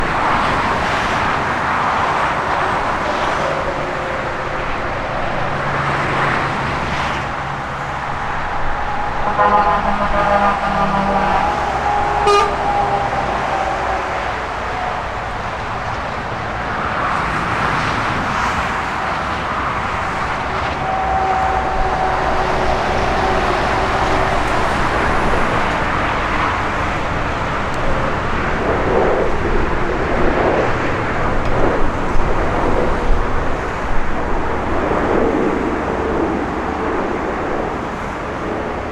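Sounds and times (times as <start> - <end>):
road traffic noise: 0.0 - 38.9
vehicle horn: 2.4 - 15.7, 19.6 - 26.6.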